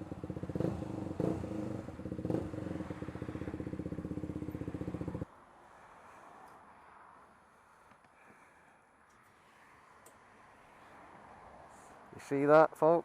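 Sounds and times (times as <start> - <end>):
motorcycle engine at low revs: 0.0 - 5.2.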